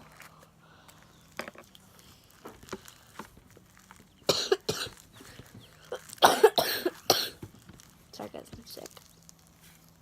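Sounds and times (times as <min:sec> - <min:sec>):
girl coughing: 0:04.3 - 0:05.0, 0:06.2 - 0:07.4.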